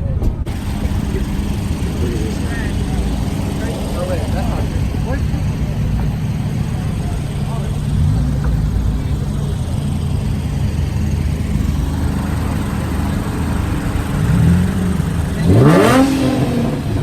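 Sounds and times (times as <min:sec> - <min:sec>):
car engine idling: 0:00.4 - 0:17.0
car engine revving: 0:00.5 - 0:17.0.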